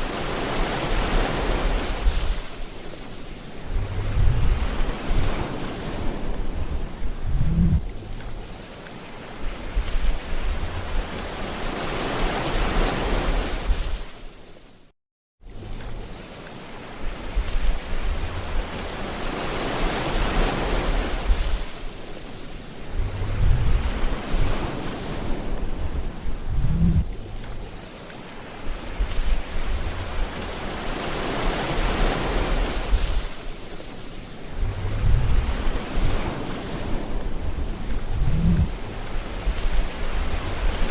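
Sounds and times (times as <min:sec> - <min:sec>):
ocean waves washing ashore: 0:00.0 - 0:40.9
low rumble: 0:03.6 - 0:08.5, 0:22.8 - 0:24.6, 0:25.2 - 0:27.8, 0:28.9 - 0:30.6, 0:34.4 - 0:40.9.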